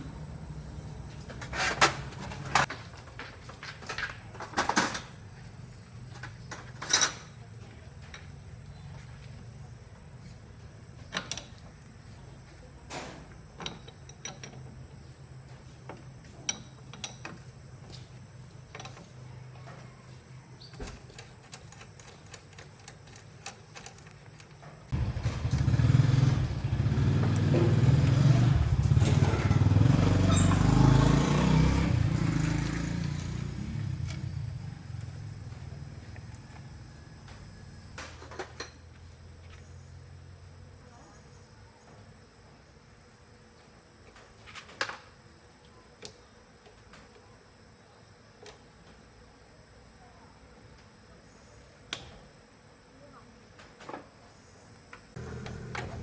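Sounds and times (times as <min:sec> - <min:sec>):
vehicle engine starting and running: 0:24.9 - 0:37.9, 0:55.1 - 0:56.0.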